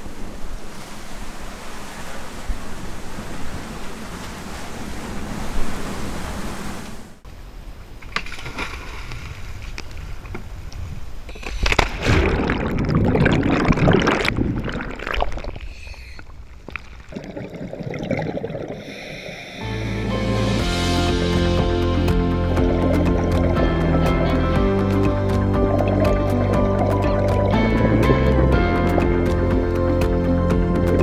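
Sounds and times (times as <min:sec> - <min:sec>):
waves sloshing: 0:00.0 - 0:07.2, 0:07.9 - 0:31.0
water splashing: 0:08.0 - 0:10.6, 0:11.3 - 0:19.6, 0:20.4 - 0:31.0.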